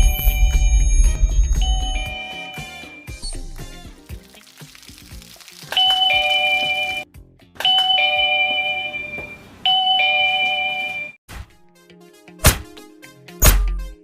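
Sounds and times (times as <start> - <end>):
electronic ding-dong doorbell chime: 0.0 - 3.1, 6.0 - 7.0, 7.6 - 11.2.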